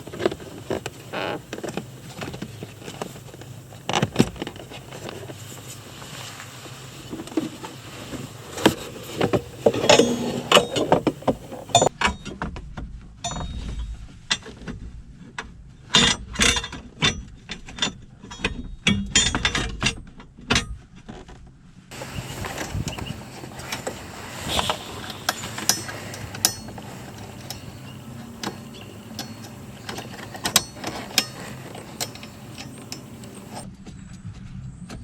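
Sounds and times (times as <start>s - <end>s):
steady hiss: 21.9s - 33.6s.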